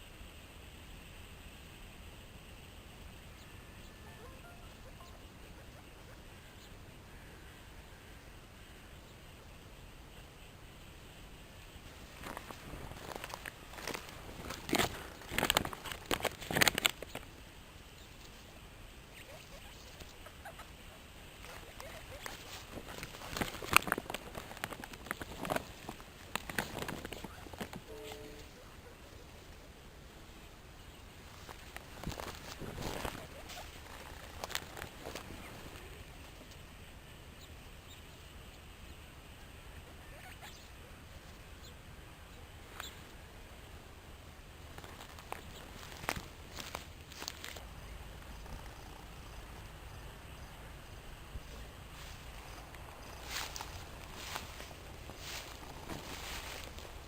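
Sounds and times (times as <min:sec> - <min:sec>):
background hiss: 0:00.0 - 0:57.0
guinea pig squeaks: 0:04.0 - 0:06.1, 0:19.1 - 0:20.7, 0:40.0 - 0:40.7
guinea pigs scurrying: 0:11.8 - 0:17.4, 0:19.1 - 0:29.7, 0:31.2 - 0:36.6, 0:44.6 - 0:50.0, 0:51.2 - 0:57.0.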